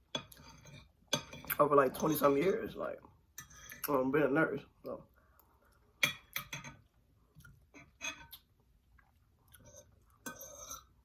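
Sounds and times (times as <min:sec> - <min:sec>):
cutlery scraping a plate: 0:00.1 - 0:02.6, 0:03.4 - 0:03.8, 0:06.0 - 0:06.9, 0:07.7 - 0:08.5, 0:09.6 - 0:11.0.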